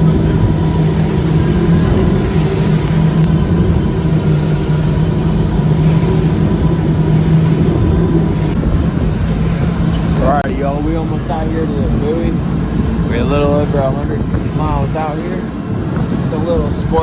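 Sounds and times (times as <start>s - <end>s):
outboard engines droning: 0.0s - 17.0s
rough rushing water noise: 0.0s - 17.0s.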